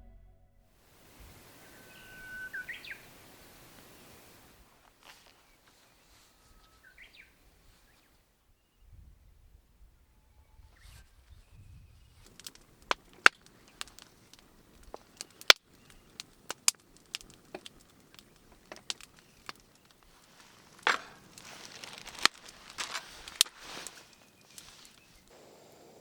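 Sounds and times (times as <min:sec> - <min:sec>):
rustling hiss: 0:00.8 - 0:08.2, 0:10.8 - 0:26.0
campfire crackling and popping: 0:12.0 - 0:26.0.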